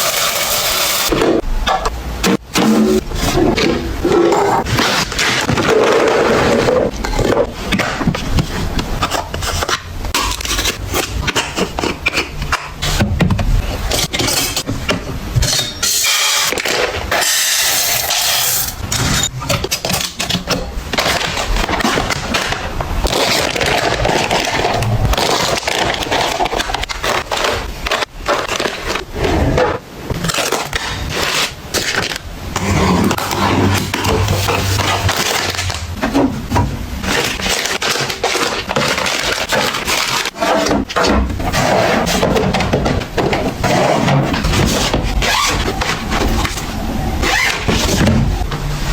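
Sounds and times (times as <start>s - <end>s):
packaging clicks and rustles: 19.0s - 29.4s, 30.1s - 48.4s.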